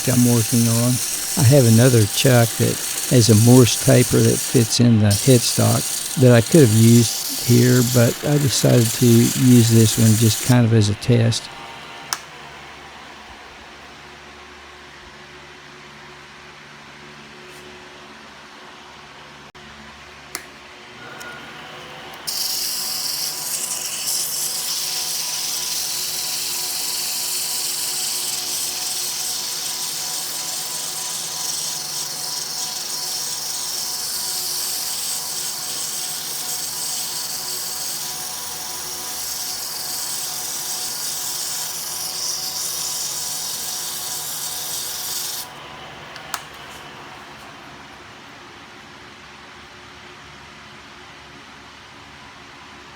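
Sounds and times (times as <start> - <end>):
tool scraping spinning work: 0.0 - 11.6, 22.3 - 45.6
lathe motor hum: 0.0 - 12.9, 21.2 - 47.5.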